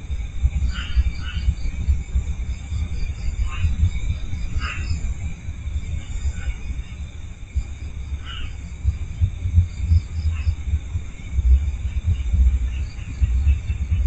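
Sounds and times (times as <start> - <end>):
crickets and insects chirping: 0.0 - 14.0
low rumble on microphone: 0.0 - 14.0.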